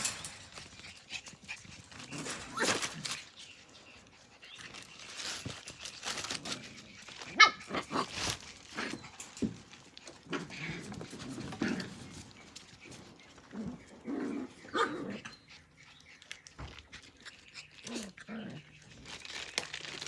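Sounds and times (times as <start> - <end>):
puppies scuffling: 0.0 - 20.0.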